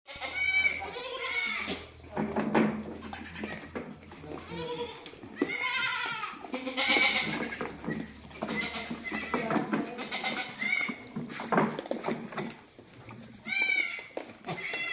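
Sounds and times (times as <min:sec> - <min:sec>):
goats bleating: 0:00.1 - 0:02.0, 0:02.9 - 0:11.2, 0:13.4 - 0:14.9.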